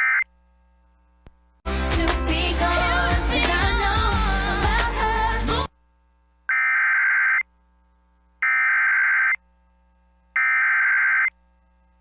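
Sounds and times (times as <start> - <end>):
buzzing digital data tones: 6.5 - 7.5, 8.4 - 9.4, 10.3 - 11.4.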